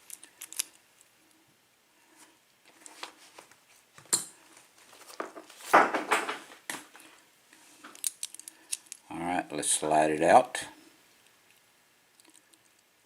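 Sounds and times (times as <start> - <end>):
metal lock parts clicking: 0.0 - 0.8, 7.9 - 9.0.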